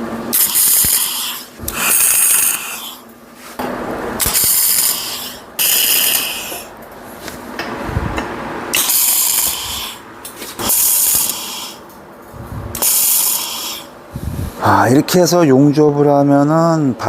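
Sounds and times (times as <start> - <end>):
crackling arc welding: 0.3 - 3.1, 4.2 - 6.9, 8.7 - 12.0, 12.7 - 13.9.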